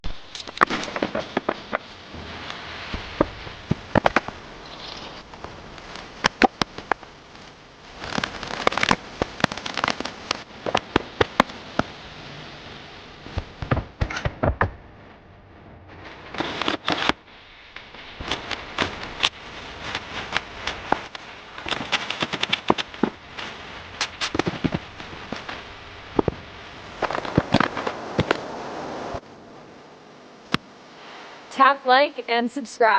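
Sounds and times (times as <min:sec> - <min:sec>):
sharp cracks and snaps: 0:00.0 - 0:12.0, 0:13.3 - 0:14.8, 0:16.0 - 0:28.5
steady low hiss: 0:00.0 - 0:32.9.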